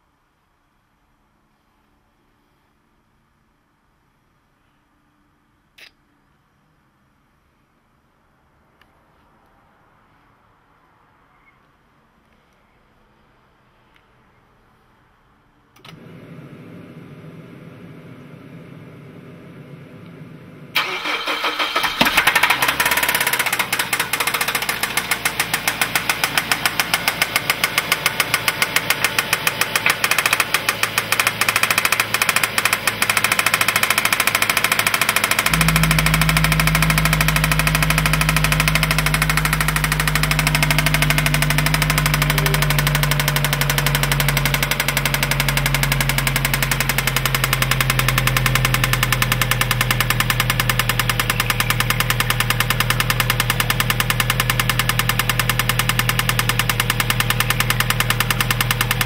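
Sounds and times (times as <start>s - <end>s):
car engine starting and knocking: 17.9s - 59.0s
deep steady hum: 21.9s - 59.0s.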